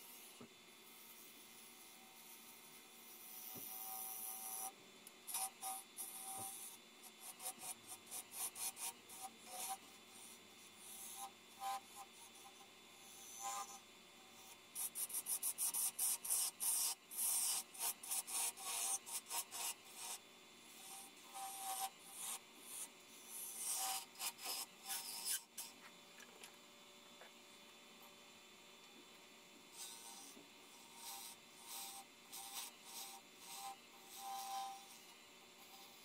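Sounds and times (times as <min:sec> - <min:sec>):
lathe tool scraping wood: 0:05.3 - 0:13.8, 0:14.4 - 0:25.9, 0:29.7 - 0:36.0.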